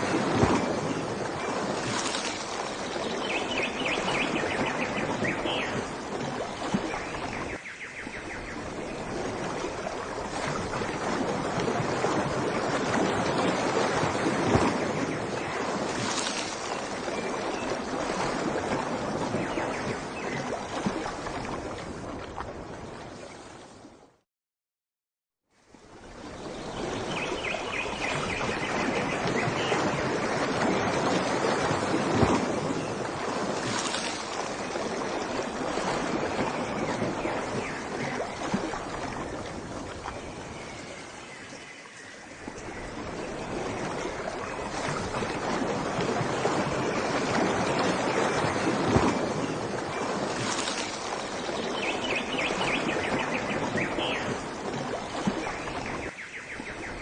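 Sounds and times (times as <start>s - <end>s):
rushing water: 0.0s - 24.2s, 25.5s - 57.0s
birds chirping: 51.5s - 54.4s.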